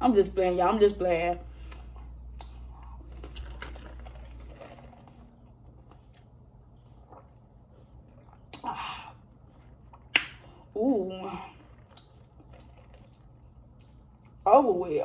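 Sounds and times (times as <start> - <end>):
person eating clicks and smacks: 1.6 - 4.0, 5.7 - 10.6, 11.8 - 14.4.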